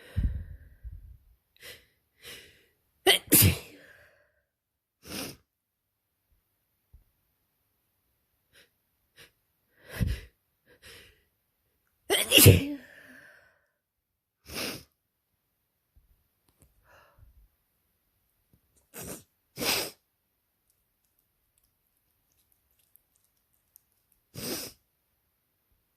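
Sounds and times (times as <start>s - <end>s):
person sneezing: 3.1s - 3.9s, 12.1s - 13.1s, 18.8s - 20.0s.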